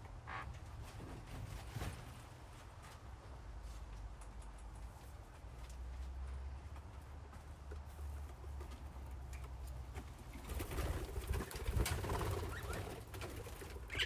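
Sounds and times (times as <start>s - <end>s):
wings fluttering: 10.3s - 14.0s.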